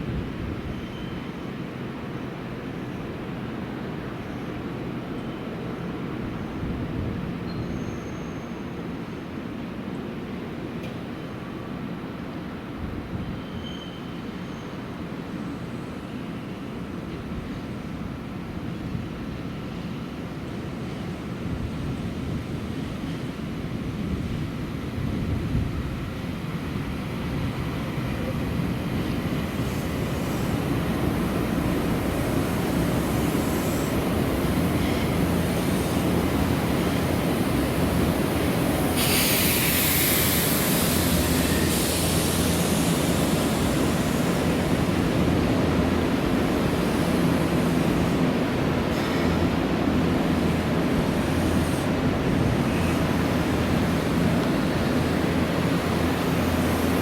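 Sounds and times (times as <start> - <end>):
electric train humming: 26.7 - 57.0
air hiss: 29.2 - 57.0.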